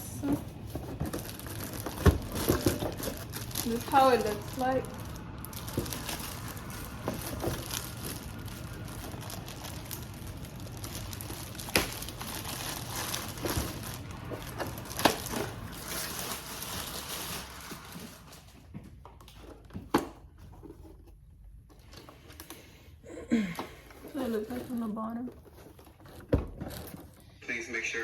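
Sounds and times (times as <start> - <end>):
packaging crinkling: 0.6 - 18.6.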